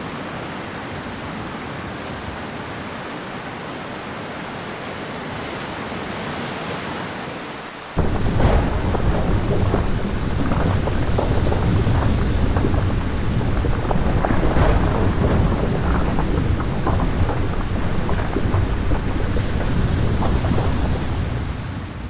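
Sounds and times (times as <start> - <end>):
heavy rain: 0.0 - 22.0
low rumble of thunder: 8.0 - 22.0.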